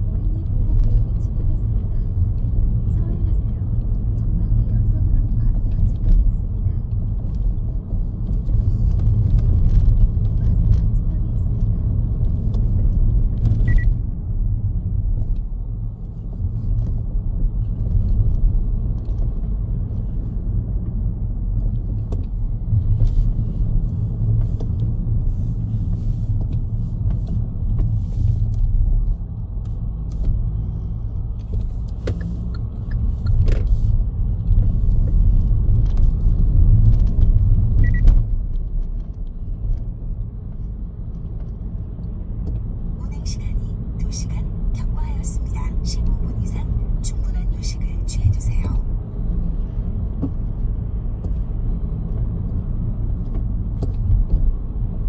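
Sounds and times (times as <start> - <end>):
car engine and road noise: 0.0 - 55.0
brief high beeps: 13.7 - 13.9.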